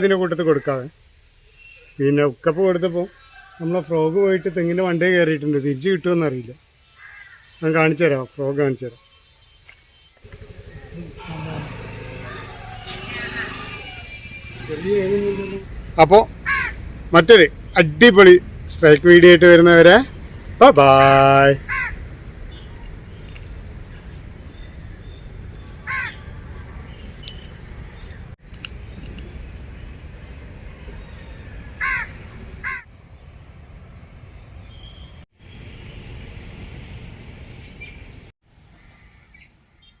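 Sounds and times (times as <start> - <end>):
outdoor background noise: 0.0 - 40.0
crows cawing: 6.9 - 7.5, 16.4 - 16.8, 21.6 - 22.0, 25.8 - 26.3, 31.8 - 32.9, 38.8 - 39.5.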